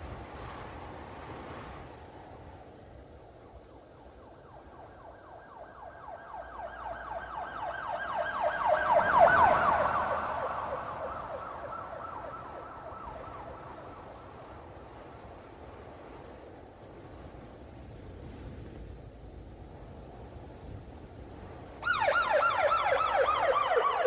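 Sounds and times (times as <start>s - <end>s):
police siren yelping: 4.5s - 14.2s, 21.8s - 24.0s.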